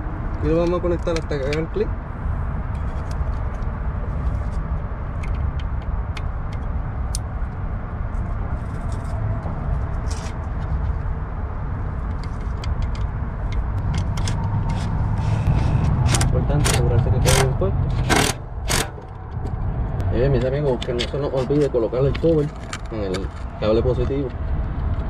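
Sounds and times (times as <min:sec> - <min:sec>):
steady low rumble: 0:00.0 - 0:25.0
clicks of wiring connectors: 0:15.8 - 0:19.5.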